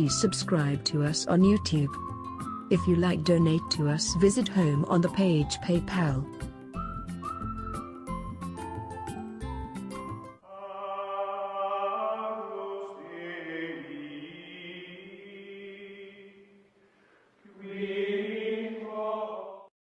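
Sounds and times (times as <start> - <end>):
slow chant-like vocal music: 10.4 - 16.8, 17.4 - 19.7.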